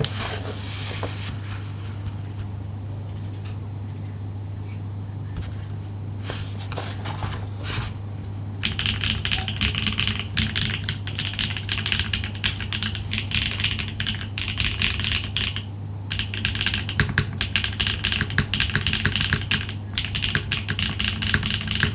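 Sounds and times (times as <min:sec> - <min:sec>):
mechanical keyboard typing: 0:08.6 - 0:21.9.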